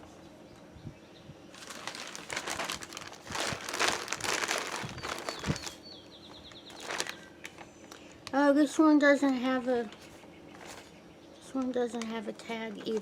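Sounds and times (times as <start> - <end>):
packaging crinkling and rustling: 1.5 - 5.8, 6.4 - 8.4.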